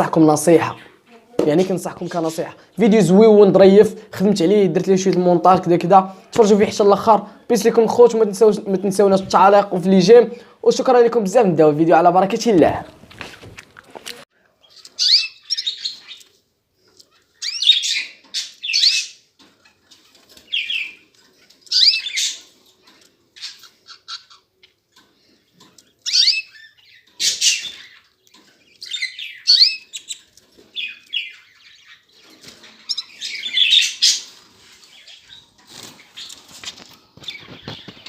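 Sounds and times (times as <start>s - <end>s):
canaries chirping: 14.5s - 38.0s.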